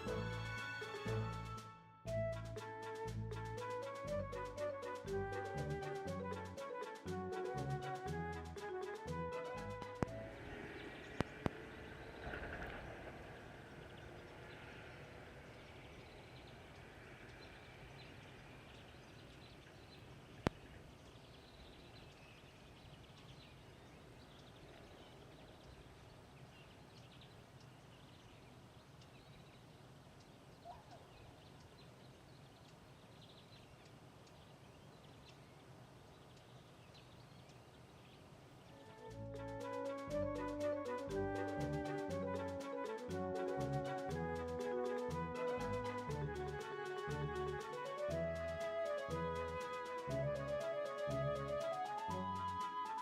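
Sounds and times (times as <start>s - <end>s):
distant birds chirping: 9.5s - 41.0s.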